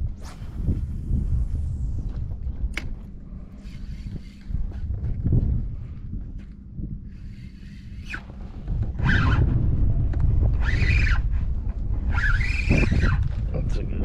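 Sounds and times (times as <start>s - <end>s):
low rumble: 0.0s - 14.0s
fishing reel whirring: 3.4s - 4.8s, 7.0s - 9.3s, 12.1s - 13.2s.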